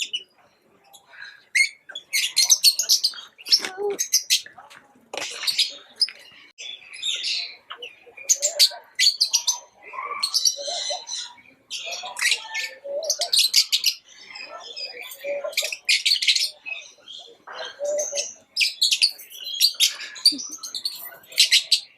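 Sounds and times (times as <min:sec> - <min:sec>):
lovebirds chirping: 0:00.0 - 0:21.9
lower chattering bird calls: 0:00.0 - 0:21.9.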